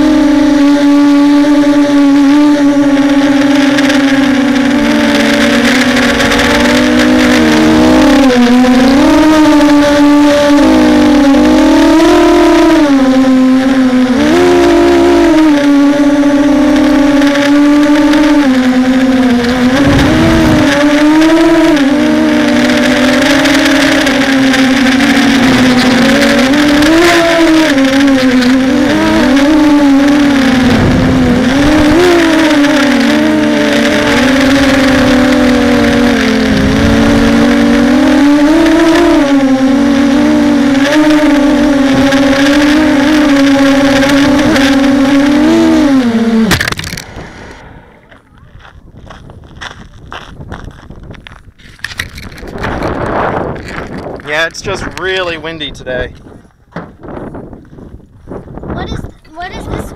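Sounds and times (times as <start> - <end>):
drone propellers droning: 0.0 - 59.9
wind buffeting microphone: 17.1 - 59.9.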